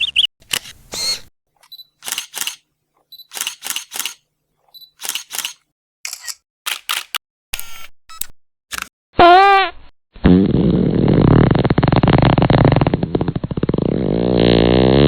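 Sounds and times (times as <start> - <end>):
camera shutter click: 0.5 - 2.6, 3.3 - 4.2, 5.0 - 7.8.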